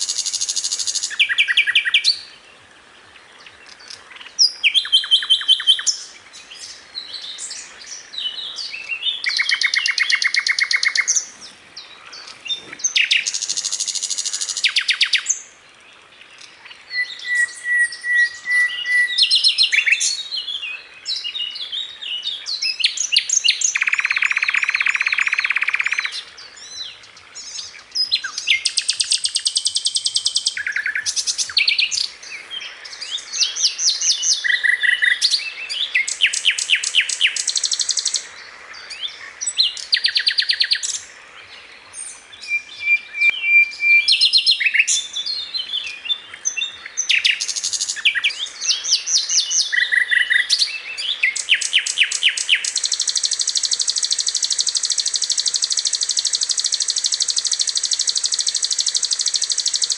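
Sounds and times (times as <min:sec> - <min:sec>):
bird singing rapid trills: 0:03.7 - 0:15.5, 0:16.4 - 0:41.1, 0:42.0 - 0:59.9.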